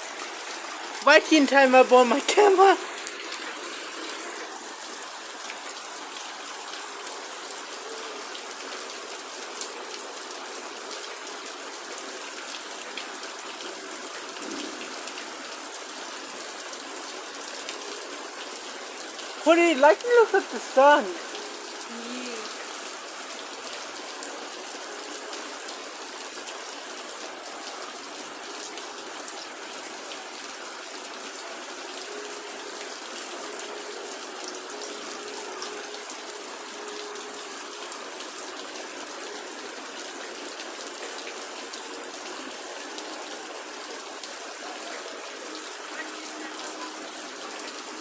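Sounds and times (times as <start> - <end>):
heavy rain pouring: 0.0 - 48.0.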